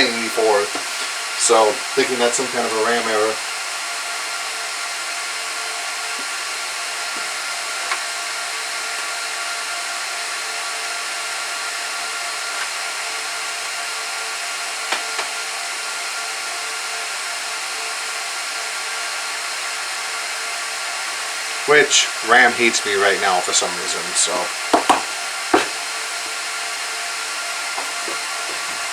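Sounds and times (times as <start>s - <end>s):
server cooling fans whooshing: 0.0s - 12.6s, 20.7s - 28.9s.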